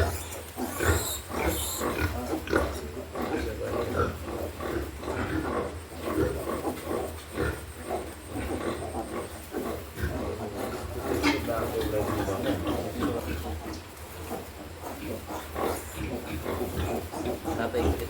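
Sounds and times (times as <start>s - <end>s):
piglets grunting and squeaking: 0.0s - 18.0s.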